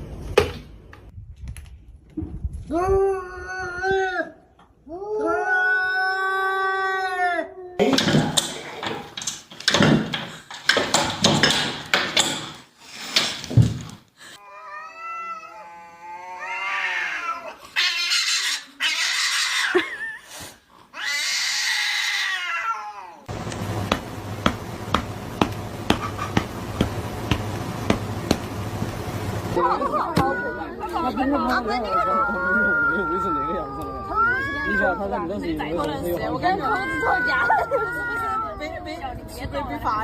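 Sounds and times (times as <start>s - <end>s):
cats meowing and yowling: 14.4s - 19.8s, 20.9s - 23.3s, 31.7s - 35.4s, 36.4s - 39.1s
steady low hum: 23.3s - 29.6s.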